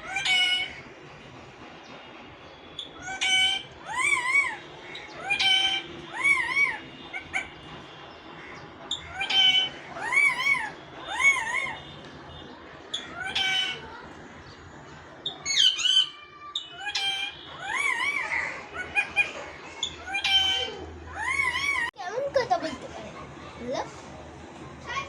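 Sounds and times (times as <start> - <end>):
parrot calling: 0.0 - 0.9, 2.8 - 7.6, 8.4 - 11.9, 12.8 - 14.0, 15.2 - 22.0.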